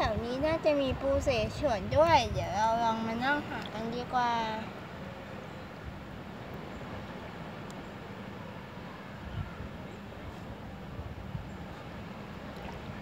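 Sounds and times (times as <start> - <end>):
wind on microphone: 0.0 - 5.0, 8.8 - 13.0
surf washing: 0.0 - 13.0.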